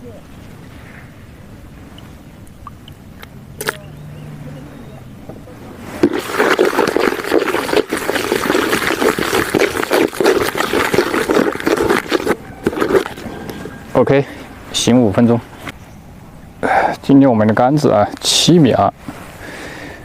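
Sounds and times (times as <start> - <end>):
wet crackling of bait mixing: 2.4 - 3.8, 5.9 - 13.7
water pouring onto powder: 6.0 - 13.2.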